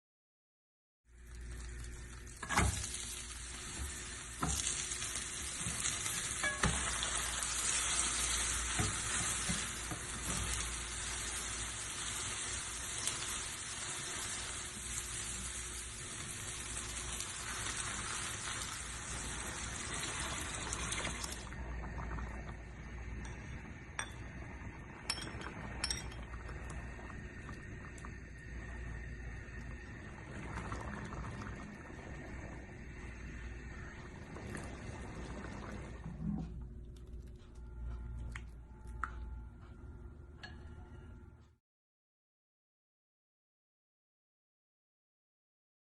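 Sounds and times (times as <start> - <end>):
food sizzling in a pan: 1.1 - 21.6.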